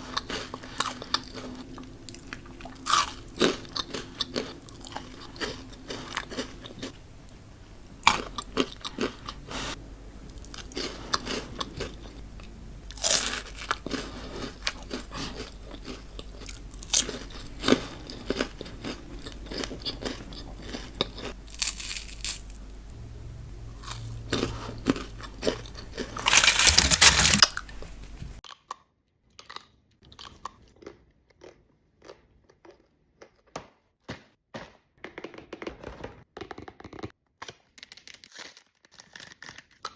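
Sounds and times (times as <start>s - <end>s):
chocolates crunching in bites: 0.1s - 7.0s, 10.4s - 22.9s, 23.8s - 28.6s.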